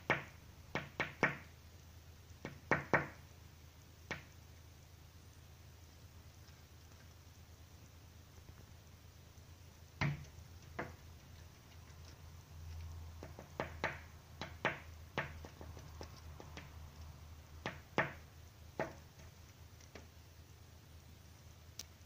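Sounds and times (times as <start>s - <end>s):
bird pecking at window glass: 2.4s - 3.2s, 10.0s - 20.2s.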